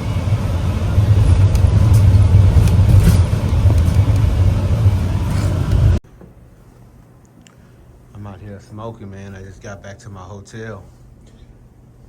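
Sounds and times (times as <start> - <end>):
vehicle engine and road rumble: 0.0 - 6.0.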